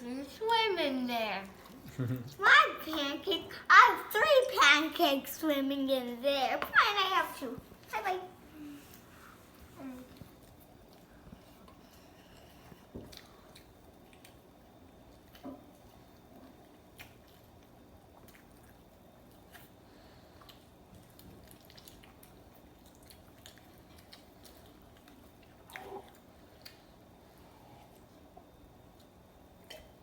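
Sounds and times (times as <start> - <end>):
chewing and eating: 8.7 - 30.0.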